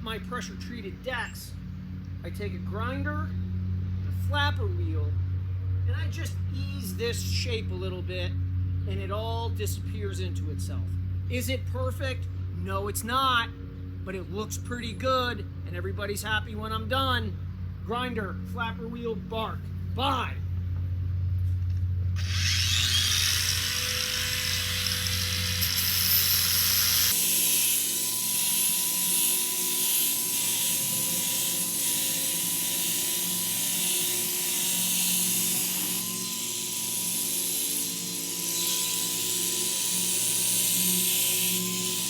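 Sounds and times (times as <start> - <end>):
angle grinder motor whine: 21.4 - 42.0
abrasive disc sanding wood: 22.2 - 42.0.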